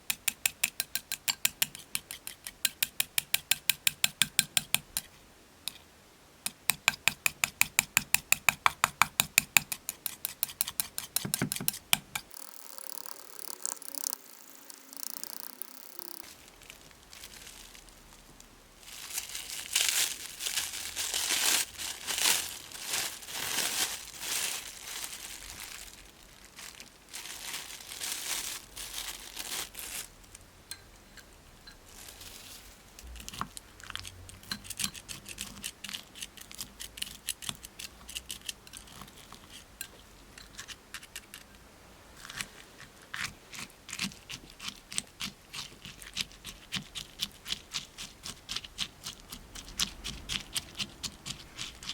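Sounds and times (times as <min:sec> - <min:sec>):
little crackling clicks: 0:12.2 - 0:16.3
crunching and crinkling by hand: 0:13.5 - 0:30.5, 0:31.7 - 0:41.5, 0:42.2 - 0:51.9.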